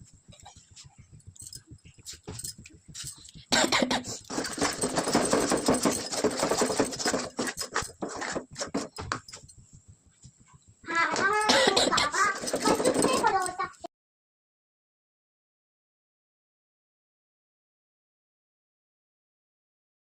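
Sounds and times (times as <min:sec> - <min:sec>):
spatula scraping a pan: 0:04.1 - 0:09.0.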